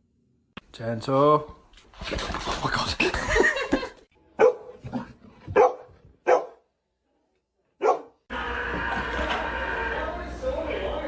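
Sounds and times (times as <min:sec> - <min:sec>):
dog barking: 0:04.4 - 0:04.8, 0:05.5 - 0:06.7, 0:07.8 - 0:08.2.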